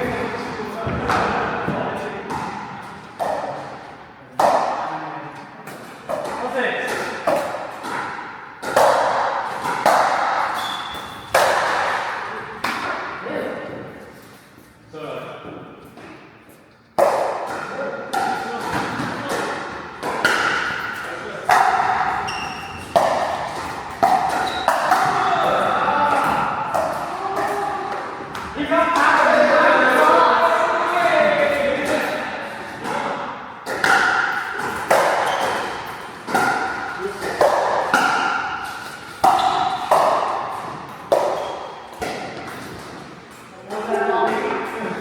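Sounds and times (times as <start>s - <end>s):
paddles hitting plastic ball: 17.0s - 30.1s, 32.8s - 43.1s.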